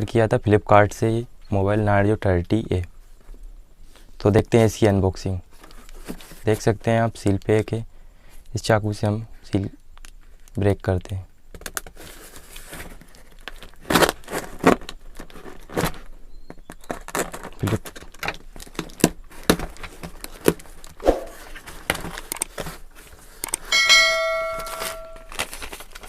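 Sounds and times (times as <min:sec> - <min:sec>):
cardboard box scraping and rustling: 0:13.8 - 0:16.1
bell-like metallic ring: 0:23.7 - 0:25.4.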